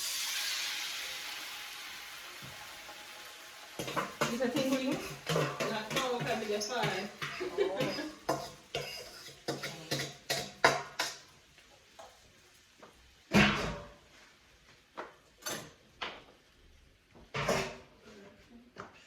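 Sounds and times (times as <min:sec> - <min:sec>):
cookware knocks and clicks: 0:03.8 - 0:11.2.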